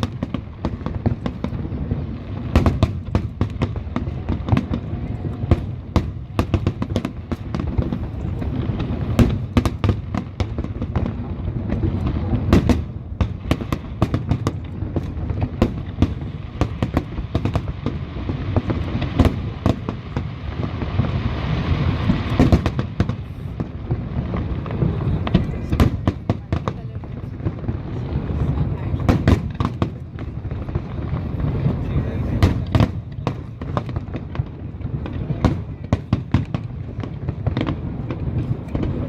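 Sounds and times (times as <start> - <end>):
fireworks crackling: 0.0 - 39.0
fireworks exploding: 0.0 - 39.0.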